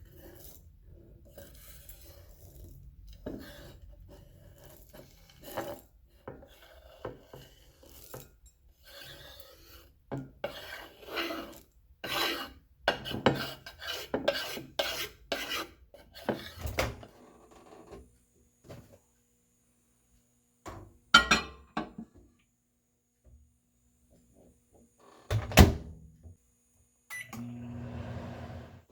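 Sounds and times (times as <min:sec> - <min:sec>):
knife scraping cutting board: 0:03.2 - 0:08.2, 0:08.8 - 0:16.6.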